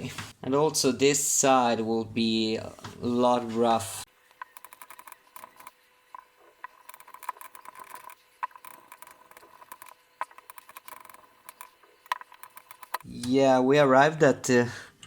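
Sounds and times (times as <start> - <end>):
faint ticks and crackles: 4.3 - 13.0
blade cutting film spool: 4.4 - 13.1.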